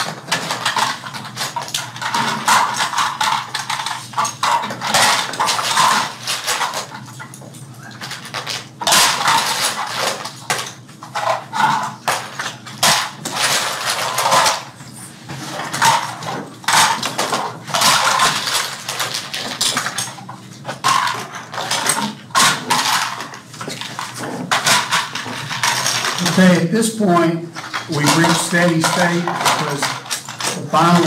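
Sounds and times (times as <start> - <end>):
small plastic parts clinking: 15.6 - 31.0.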